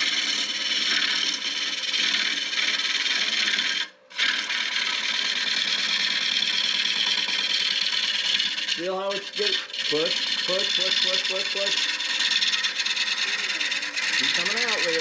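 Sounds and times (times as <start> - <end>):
gouge scraping wood on a lathe: 0.0 - 15.0.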